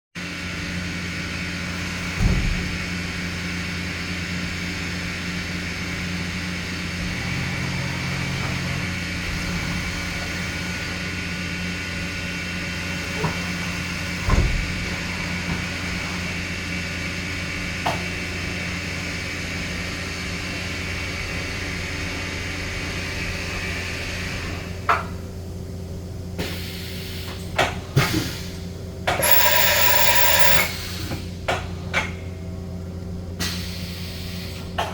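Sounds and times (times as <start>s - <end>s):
machining center hum and whine: 29.0s - 31.0s.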